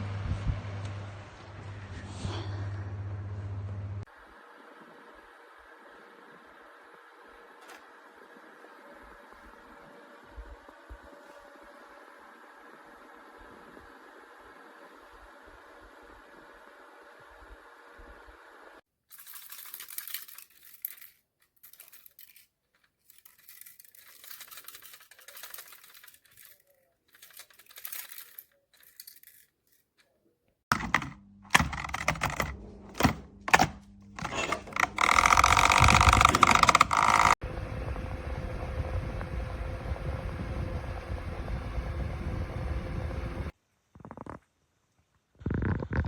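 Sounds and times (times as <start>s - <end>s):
electric desk fan humming: 0.0s - 18.8s, 30.7s - 43.6s
rustling and handling: 18.9s - 37.4s
clicks and clatter: 19.1s - 37.4s.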